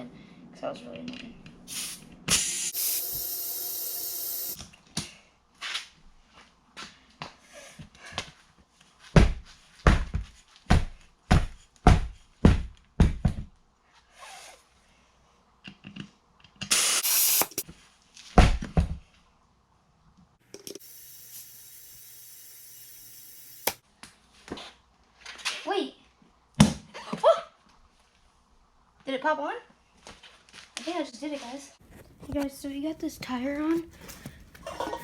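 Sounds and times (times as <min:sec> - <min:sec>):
compressed air hiss: 0:01.7 - 0:04.6, 0:16.7 - 0:17.6, 0:20.8 - 0:23.8.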